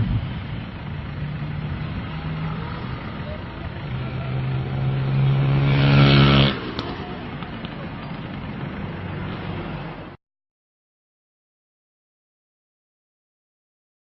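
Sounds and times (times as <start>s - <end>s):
steady background noise: 0.0s - 10.2s
vehicle engine humming: 0.0s - 10.2s.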